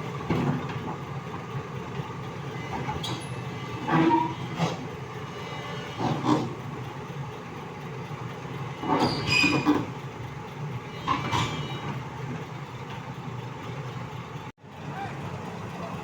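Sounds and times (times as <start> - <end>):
excavator diesel engine running: 0.0 - 16.0
steel tracks clanking: 0.1 - 16.0
short metallic squeals: 8.8 - 9.9, 10.9 - 12.0.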